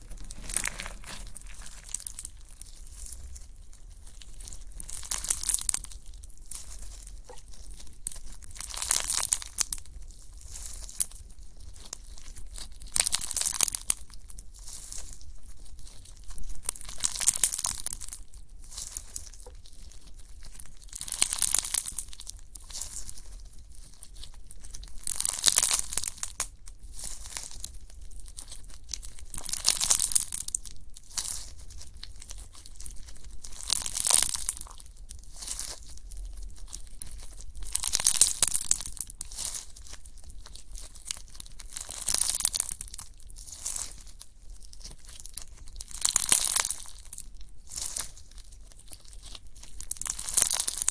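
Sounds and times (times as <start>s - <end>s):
slime squeezed by hand: 0.0s - 2.3s.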